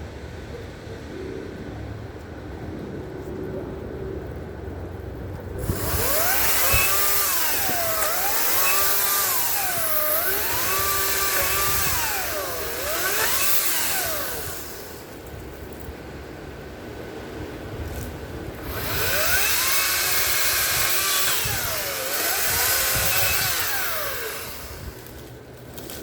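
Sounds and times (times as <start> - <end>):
electric chainsaw cutting branches: 5.6 - 15.9, 17.9 - 26.0.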